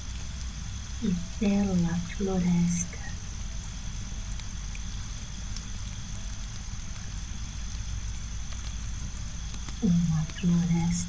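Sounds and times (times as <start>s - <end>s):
falling rain: 0.0s - 11.0s
low brown noise rumble: 0.0s - 11.0s
faint steady high tones: 9.8s - 11.0s.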